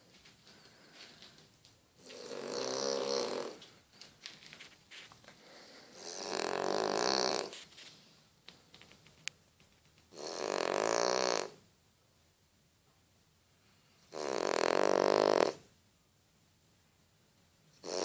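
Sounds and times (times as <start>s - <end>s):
dog snoring: 2.0s - 3.6s, 5.6s - 7.6s, 10.1s - 11.6s, 14.1s - 15.7s, 17.8s - 18.0s.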